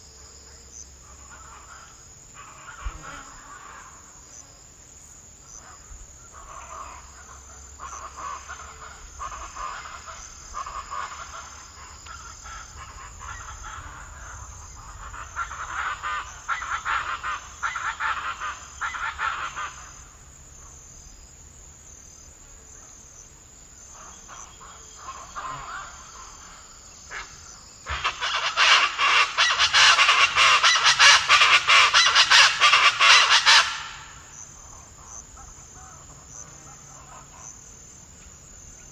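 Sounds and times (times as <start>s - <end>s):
crickets trilling: 0.0s - 38.9s
birds calling: 6.3s - 21.2s, 23.0s - 37.6s.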